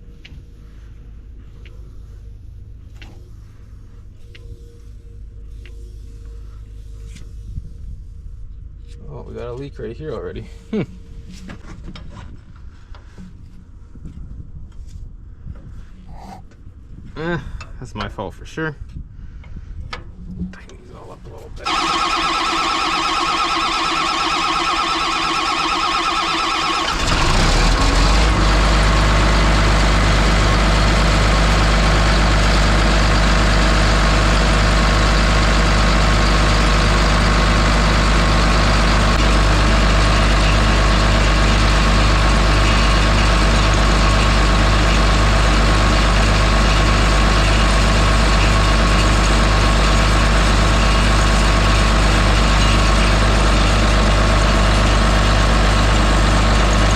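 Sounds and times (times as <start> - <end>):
diesel engine cranking and idling: 20.0 - 56.9.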